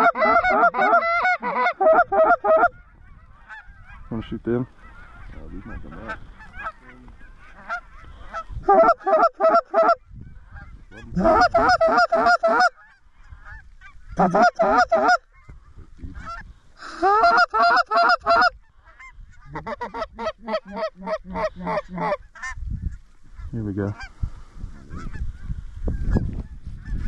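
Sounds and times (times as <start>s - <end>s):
goose call honks: 0.0s - 4.1s, 4.8s - 10.0s, 10.6s - 15.2s, 17.0s - 22.6s.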